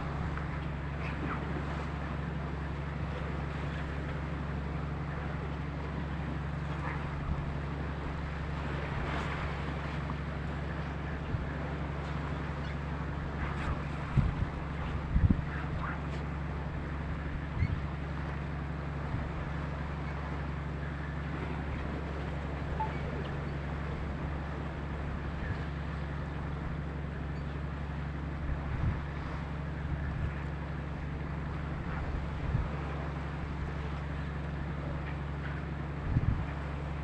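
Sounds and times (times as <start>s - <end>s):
boat engine droning: 0.0s - 37.0s
wind buffeting microphone: 6.4s - 19.8s, 28.3s - 33.8s, 35.2s - 37.0s.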